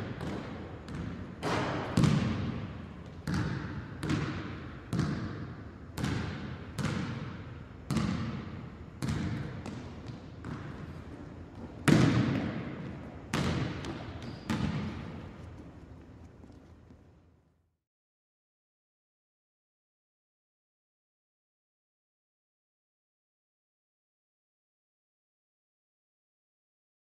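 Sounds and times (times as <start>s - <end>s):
basketball bouncing with echo: 0.0s - 17.2s.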